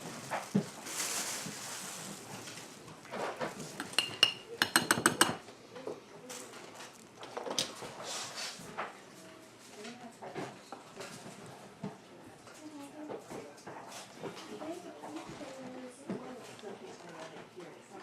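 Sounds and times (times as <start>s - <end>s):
metal utensil clinking on dishes: 3.8s - 5.4s.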